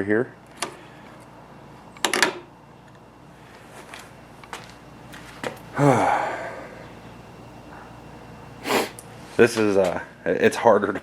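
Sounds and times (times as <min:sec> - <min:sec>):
person grunting: 0:05.7 - 0:06.8.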